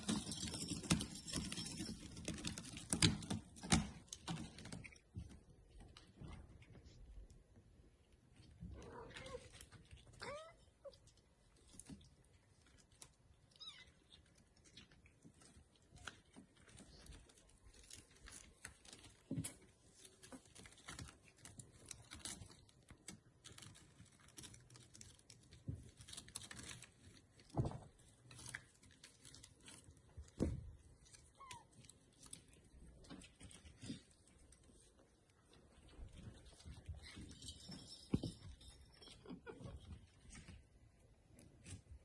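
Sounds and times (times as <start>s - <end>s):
kittens knocking and scuffling: 0.0s - 10.5s, 14.5s - 42.0s.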